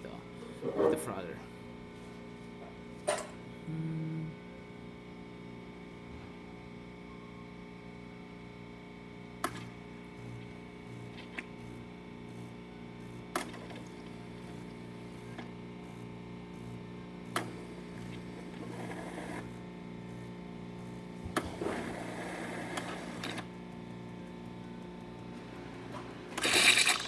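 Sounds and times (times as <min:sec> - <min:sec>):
espresso machine hum: 0:01.5 - 0:27.0
frother hissing spurt: 0:26.4 - 0:27.0.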